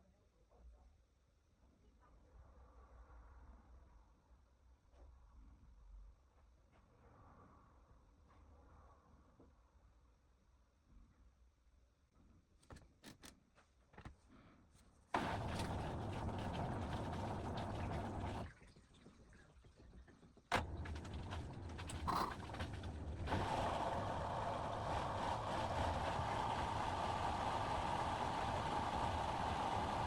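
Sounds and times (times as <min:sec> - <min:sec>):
washing machine whirring: 0:15.0 - 0:30.0.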